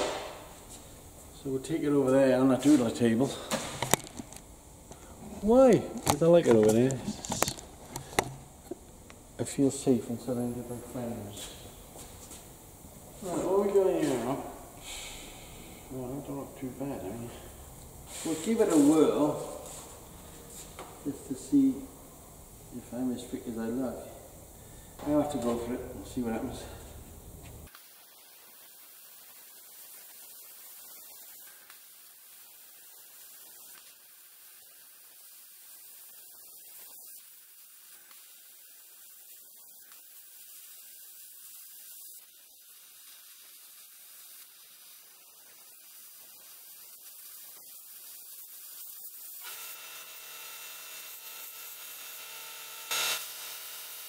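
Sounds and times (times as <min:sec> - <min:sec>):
sharp knock: 0:00.0 - 0:00.4.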